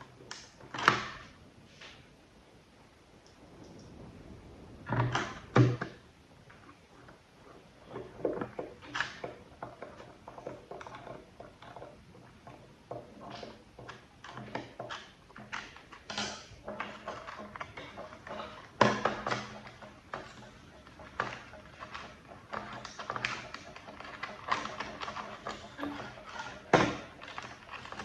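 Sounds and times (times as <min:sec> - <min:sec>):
hard parts knocking on a workbench: 0:04.9 - 0:06.0, 0:16.1 - 0:28.0.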